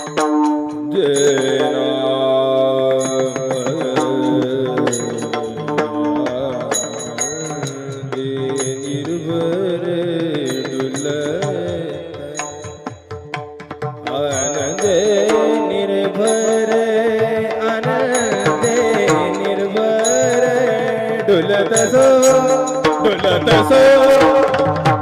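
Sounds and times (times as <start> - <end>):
drum and cymbal accompaniment: 0.0 - 1.6
person singing: 0.0 - 25.0.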